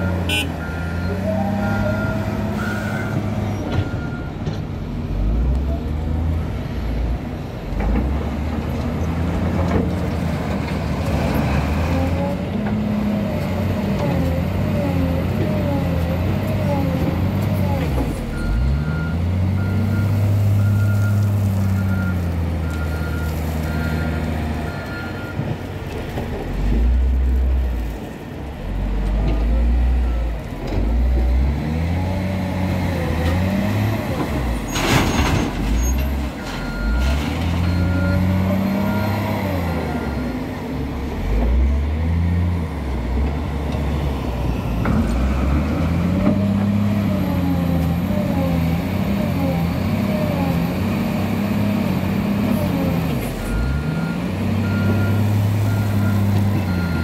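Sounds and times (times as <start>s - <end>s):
wheel loader diesel engine revving: 0.0s - 27.7s, 28.6s - 57.0s
reversing alarm beeping: 53.4s - 57.0s.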